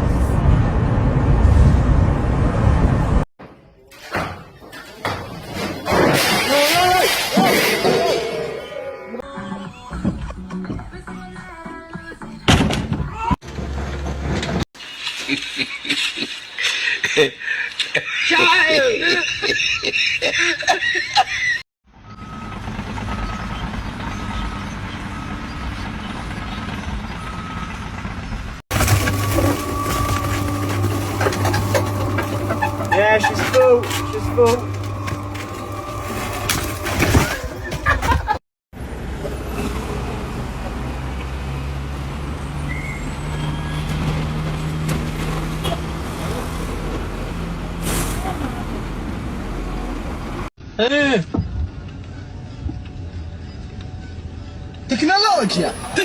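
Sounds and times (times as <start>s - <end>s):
voices and laughter: 15.3s - 21.6s
low engine rumble: 22.2s - 38.4s.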